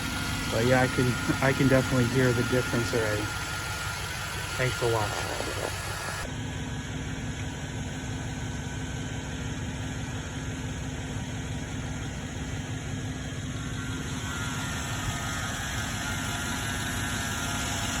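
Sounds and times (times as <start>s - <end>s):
faint high whine: 0.0s - 6.3s, 13.3s - 18.0s
car engine idling: 0.0s - 18.0s.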